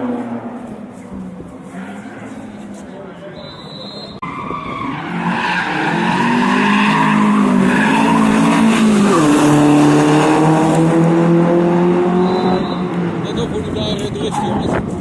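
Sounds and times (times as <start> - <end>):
rally car engine at high revs: 5.0 - 15.0.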